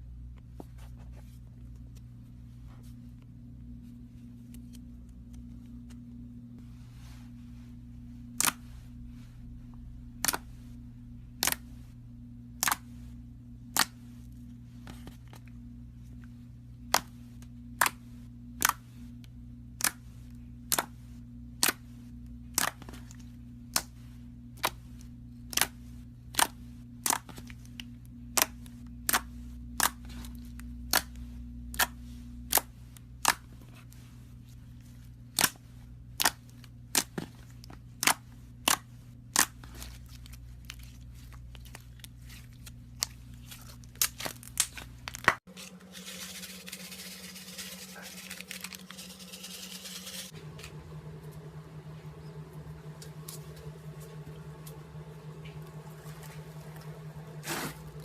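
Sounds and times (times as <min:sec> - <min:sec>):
steady low hum: 0:00.0 - 0:58.0
slime popping: 0:12.6 - 0:12.9.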